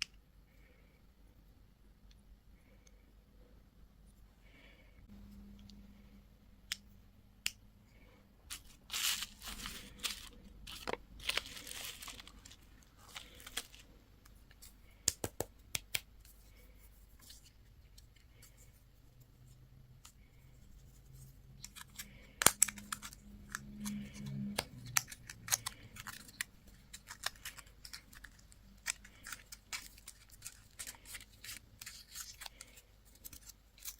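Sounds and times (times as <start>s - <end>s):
candy wrappers crinkling: 8.5s - 15.3s, 21.6s - 33.9s.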